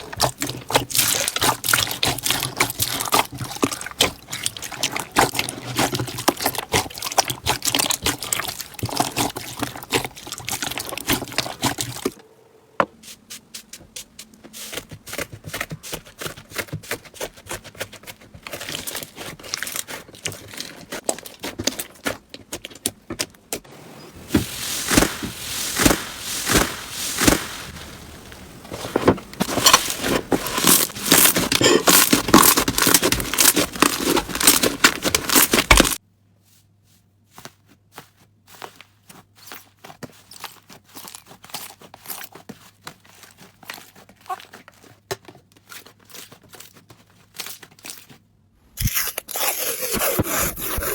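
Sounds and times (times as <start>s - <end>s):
crunchy slime crackling and popping: 0.0s - 12.2s, 24.3s - 28.8s, 29.4s - 36.0s.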